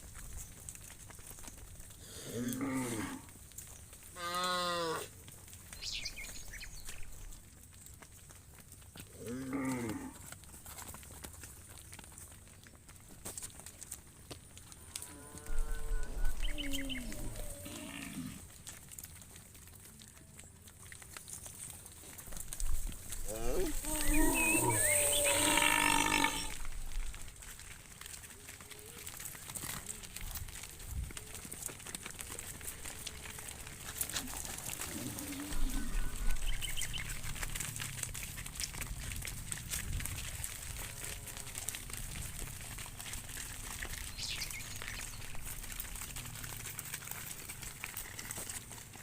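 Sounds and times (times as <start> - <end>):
cow mooing: 2.3 - 3.2, 9.2 - 10.2, 14.9 - 18.4, 23.3 - 26.6, 34.9 - 36.4
high bird chirps: 16.3 - 17.2.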